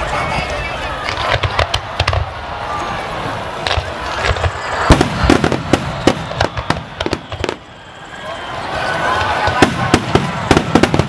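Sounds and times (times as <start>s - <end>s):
fireworks bangs and crackles: 0.0s - 11.0s.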